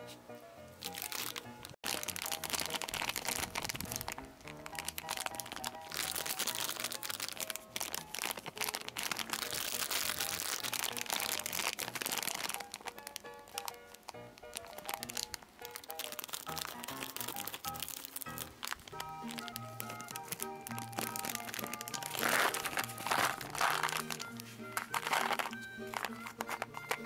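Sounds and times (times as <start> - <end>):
background music with light melody: 0.0 - 27.0
plastic packaging crinkling: 0.8 - 27.0.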